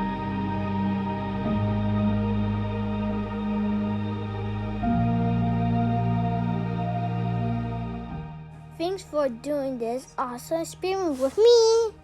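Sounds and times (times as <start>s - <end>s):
ambient synth pad chords: 0.0s - 8.8s.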